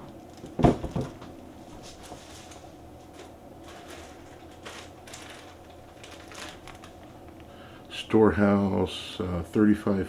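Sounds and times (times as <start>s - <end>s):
steady low hum: 0.0s - 10.0s
rustling of tools and packaging: 0.2s - 7.2s.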